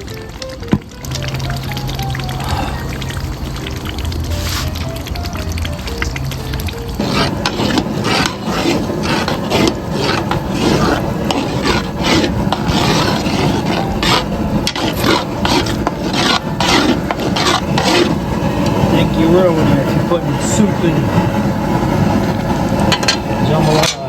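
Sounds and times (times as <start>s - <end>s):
paddle scraping a pot: 4.3s - 5.1s, 6.4s - 24.0s.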